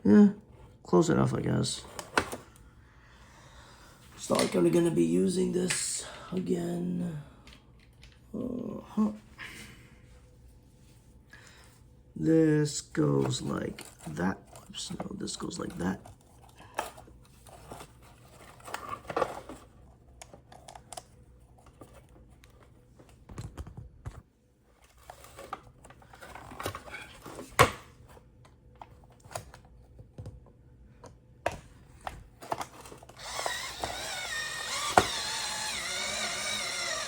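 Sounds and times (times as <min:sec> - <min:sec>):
small motor whirring: 0:33.1 - 0:37.0.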